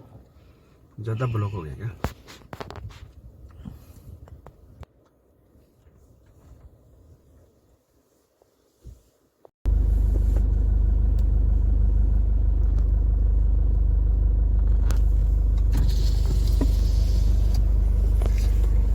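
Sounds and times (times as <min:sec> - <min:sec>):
car engine low rumble: 0:09.7 - 0:18.9
brief hiss: 0:15.7 - 0:18.9.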